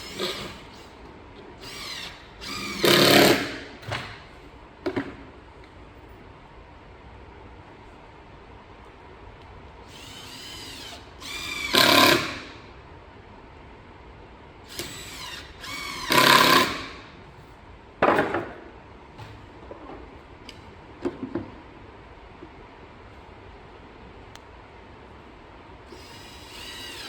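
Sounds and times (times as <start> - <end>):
cordless drill whirring: 0.0 - 0.9, 1.6 - 3.6, 9.9 - 12.6, 14.7 - 17.0, 25.9 - 27.0.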